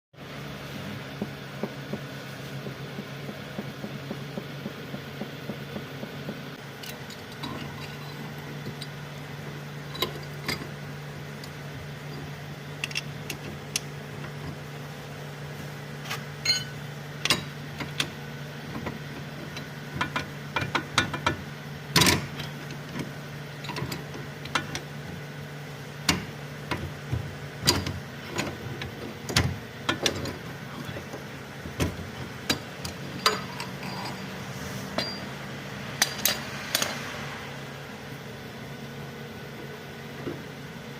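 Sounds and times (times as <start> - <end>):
low machine hum: 0.2 - 40.9
metal tools clinking on car parts: 9.8 - 10.8, 11.4 - 14.5, 16.1 - 18.1, 29.9 - 37.0.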